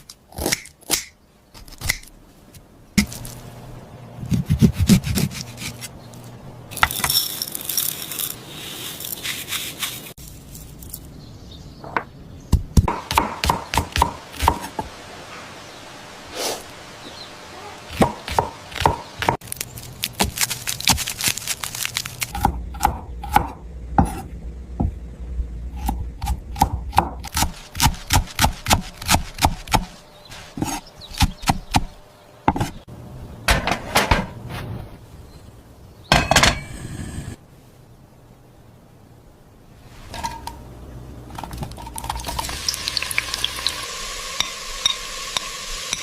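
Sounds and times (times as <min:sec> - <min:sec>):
noisy scrape or rustle: 0:04.8 - 0:11.1, 0:33.7 - 0:35.0, 0:39.8 - 0:40.6.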